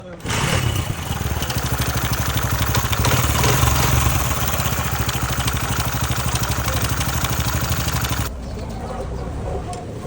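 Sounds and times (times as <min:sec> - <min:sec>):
engine idling with clatter: 0:00.2 - 0:08.3.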